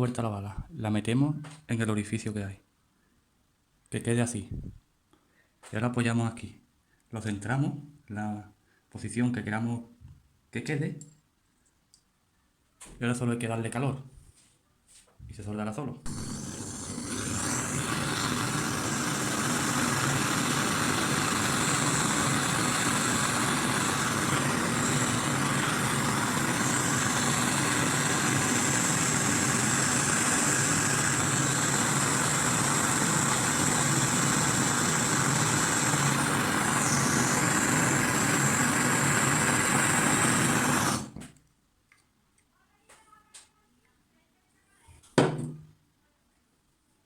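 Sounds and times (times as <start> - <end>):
blowtorch hissing: 16.1 - 41.2.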